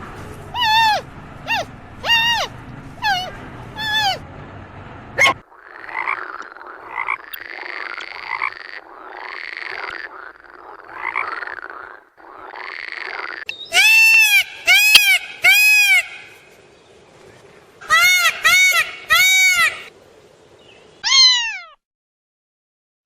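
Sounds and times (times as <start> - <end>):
loud clear pitched calls: 0.5 - 4.2, 13.5 - 16.5, 17.8 - 19.9
rasping croak-like animal calls: 0.5 - 4.2, 5.2 - 14.6.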